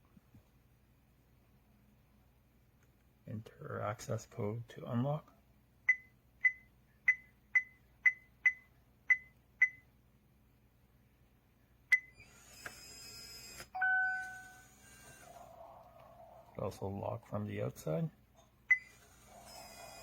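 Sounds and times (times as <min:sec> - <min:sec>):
keypad beeps: 0:05.9 - 0:09.8, 0:13.8 - 0:14.7, 0:18.7 - 0:19.7
lock motor whirring: 0:12.1 - 0:15.8, 0:18.7 - 0:20.0.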